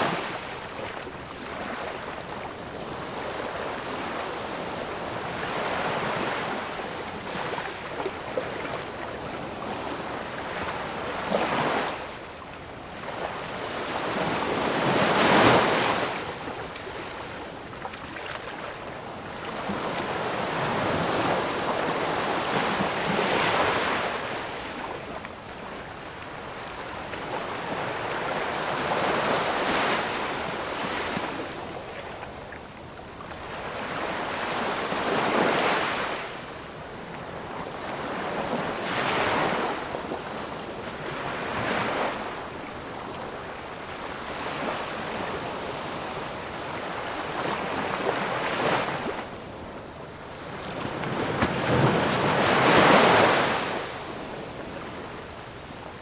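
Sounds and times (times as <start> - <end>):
ocean waves breaking on shore: 12.9 - 56.0.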